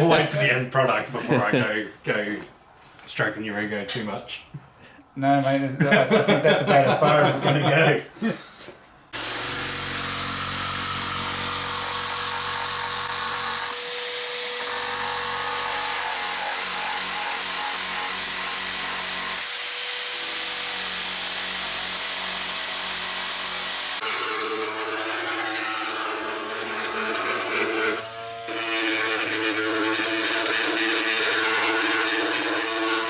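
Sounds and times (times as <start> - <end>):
electric power tool running: 9.2 - 33.0.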